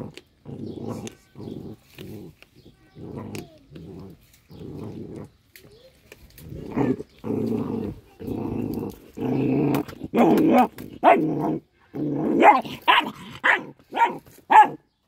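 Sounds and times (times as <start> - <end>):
small dog growling: 0.0 - 5.4, 6.4 - 14.7
dog barking sharply: 12.4 - 14.8.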